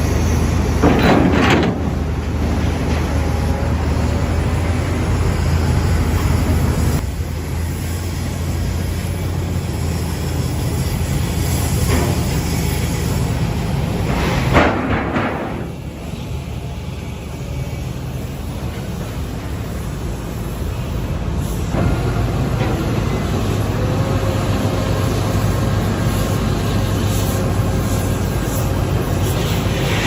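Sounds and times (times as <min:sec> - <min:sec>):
industrial machinery humming: 0:00.0 - 0:30.0
metal clattering: 0:00.8 - 0:02.1.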